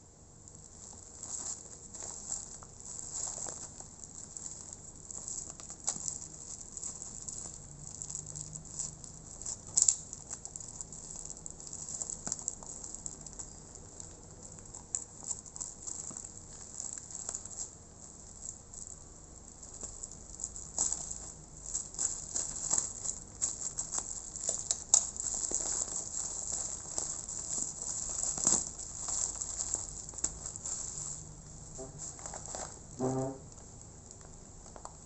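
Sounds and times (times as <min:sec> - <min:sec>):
packaging rustling and clicking: 0:19.7 - 0:31.2.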